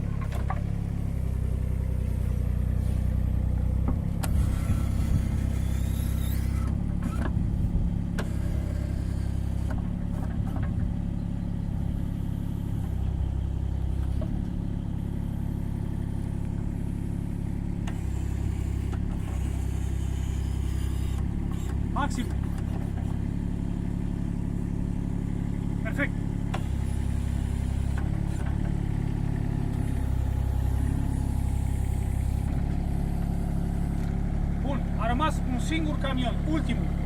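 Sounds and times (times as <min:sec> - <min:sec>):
excavator diesel engine running: 0:00.0 - 0:37.0
brief high squeal: 0:04.4 - 0:06.7.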